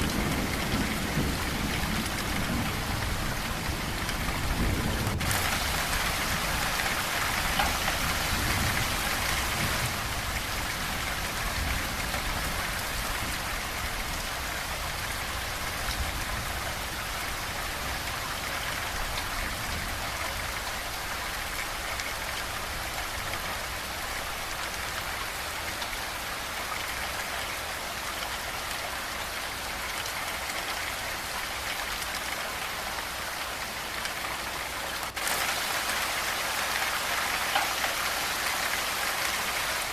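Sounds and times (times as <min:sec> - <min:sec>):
thunder rumble: 0:00.0 - 0:16.9
heavy rain falling: 0:00.0 - 0:39.9.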